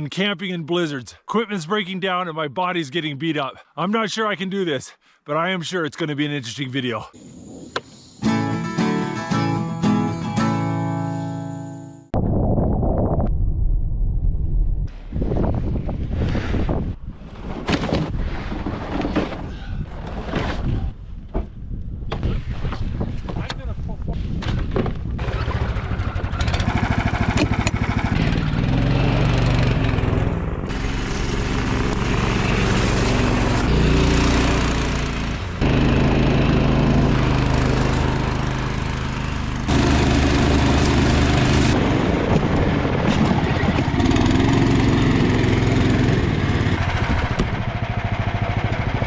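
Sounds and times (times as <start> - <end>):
small engine running: 25.2 - 42.0, 43.7 - 49.0.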